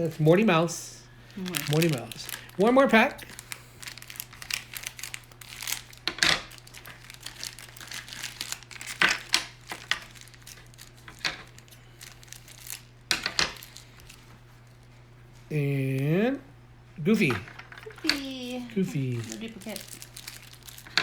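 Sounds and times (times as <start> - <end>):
packaging crinkling and rustling: 1.2 - 15.1, 17.6 - 21.0
packaging tearing: 1.3 - 14.8, 18.1 - 21.0.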